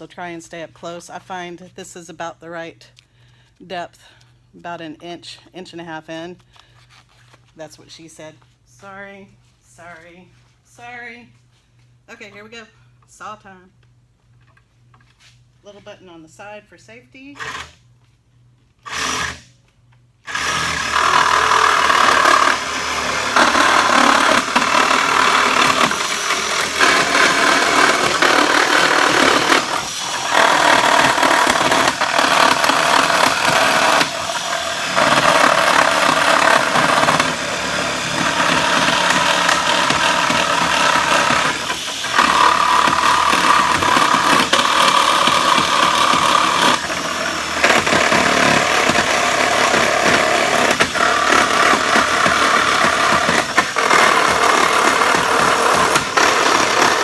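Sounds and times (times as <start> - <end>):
electric power saw cutting wood: 18.8 - 19.5, 20.2 - 57.0.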